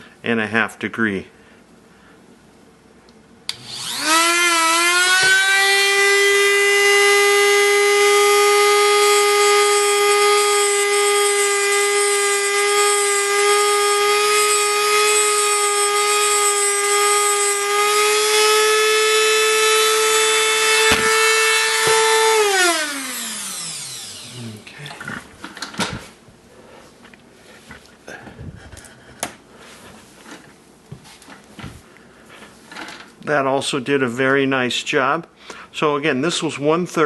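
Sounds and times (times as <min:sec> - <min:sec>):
grinder motor whining: 0:03.5 - 0:25.3.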